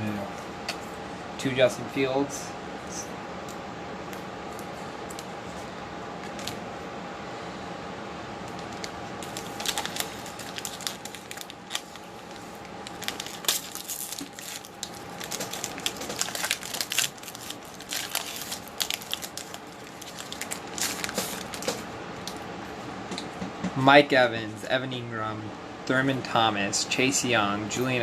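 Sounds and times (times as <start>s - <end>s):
wrapper crinkling and tearing: 8.6s - 22.4s.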